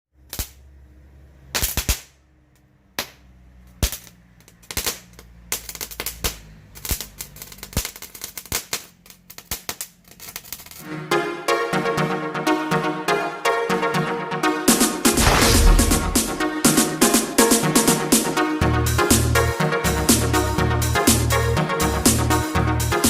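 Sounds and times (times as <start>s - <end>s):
firework crackling pops: 0.2s - 0.6s, 1.5s - 2.2s, 3.0s - 10.8s, 15.1s - 16.6s.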